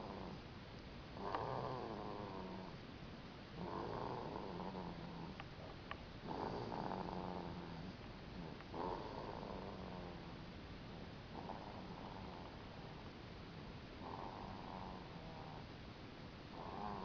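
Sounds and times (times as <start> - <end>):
person snoring: 6.2 - 10.1, 16.6 - 17.0.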